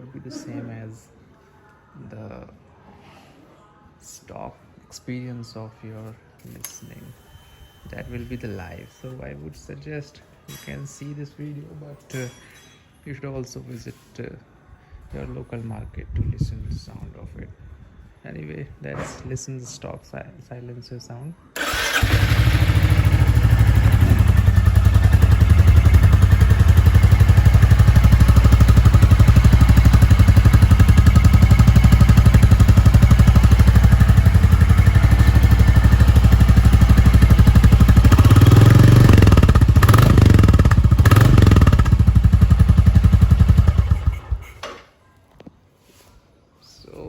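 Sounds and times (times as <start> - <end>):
motorcycle engine idling: 21.6 - 44.6
motorcycle throttle blips: 21.6 - 44.8.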